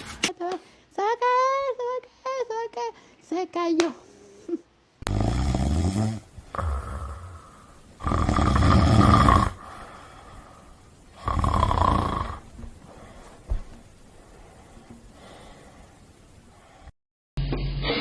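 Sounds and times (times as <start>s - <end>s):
dog snoring loudly: 5.1s - 9.7s, 11.1s - 12.5s.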